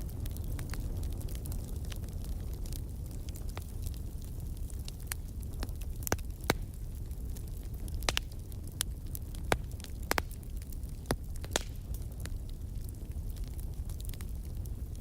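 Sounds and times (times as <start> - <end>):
wood fire crackling: 0.0 - 15.0
sharp pops and snaps: 8.0 - 8.3, 9.4 - 10.4, 11.0 - 12.0.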